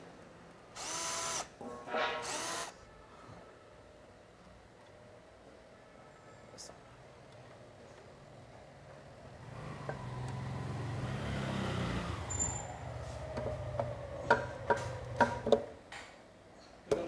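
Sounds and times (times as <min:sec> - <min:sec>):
vehicle engine driving past: 0:09.3 - 0:15.4.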